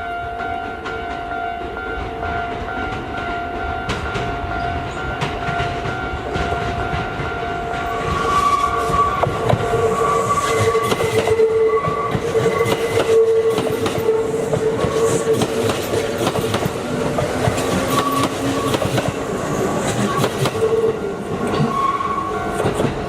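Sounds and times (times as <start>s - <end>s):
train wheels clacking over rail joints: 10.4s - 21.8s.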